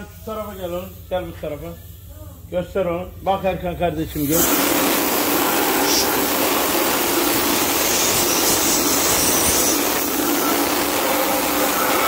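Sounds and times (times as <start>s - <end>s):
machinery rushing hiss: 4.1s - 12.0s.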